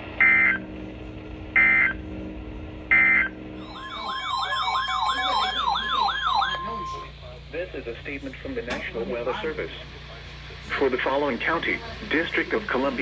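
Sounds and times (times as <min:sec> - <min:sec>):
low steady hum: 0:00.1 - 0:12.8
digital data tone bursts: 0:03.6 - 0:07.1
electronic warbling alert tone: 0:03.6 - 0:07.1.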